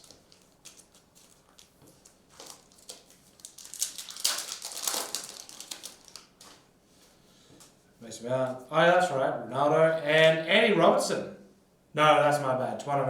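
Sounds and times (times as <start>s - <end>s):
wrappers and cards crinkling: 0.0s - 6.7s.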